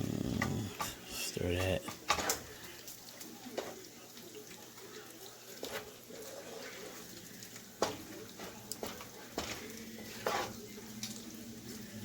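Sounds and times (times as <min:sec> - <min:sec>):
meat sizzling in a pan: 0:00.0 - 0:12.0
utensil scraping a pan: 0:00.4 - 0:02.8, 0:05.6 - 0:11.2.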